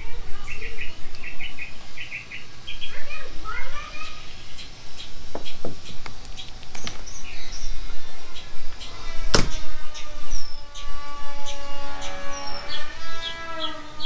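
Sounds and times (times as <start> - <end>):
bird chirping and whistling: 7.0 - 13.9.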